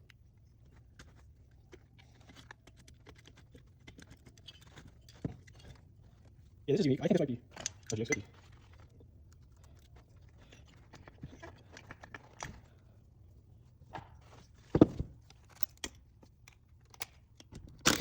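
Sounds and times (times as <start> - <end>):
metal parts and tools clicking: 1.9 - 5.8, 7.5 - 10.0, 15.3 - 18.0.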